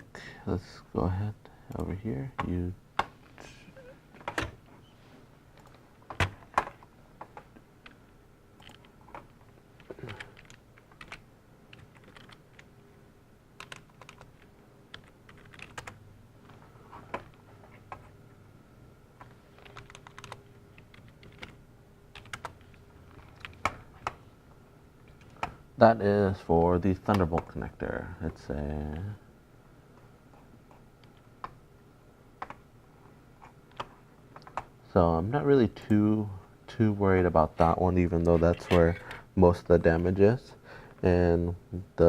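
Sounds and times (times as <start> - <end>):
keyboard and mouse clicks: 8.6 - 12.7, 13.6 - 18.1, 19.2 - 21.6, 22.2 - 24.2.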